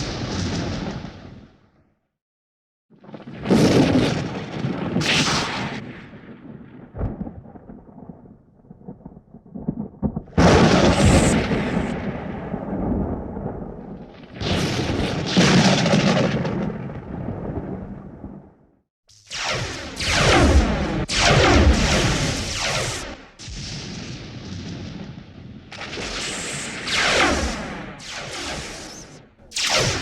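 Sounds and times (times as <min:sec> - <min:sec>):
heavy sci-fi blasts: 0:10.4 - 0:12.3, 0:19.3 - 0:24.1, 0:25.8 - 0:30.0.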